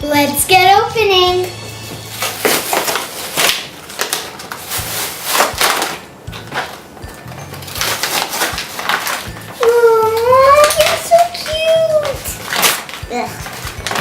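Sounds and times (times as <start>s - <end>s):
packaging being torn open: 2.1s - 6.8s, 7.6s - 14.0s.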